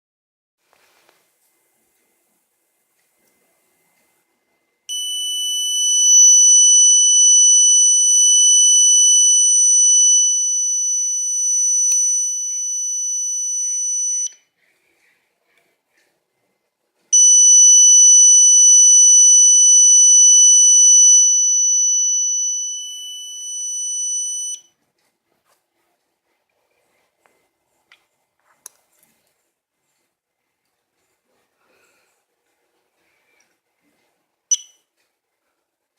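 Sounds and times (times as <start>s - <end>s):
high-pitched electronic alarm tone: 4.9s - 14.4s, 17.2s - 24.7s.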